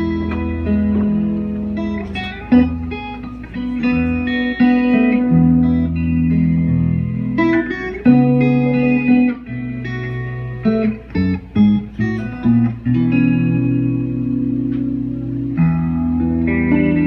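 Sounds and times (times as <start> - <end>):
guitar chords: 0.0 - 17.0
plucked guitar notes: 0.0 - 17.0.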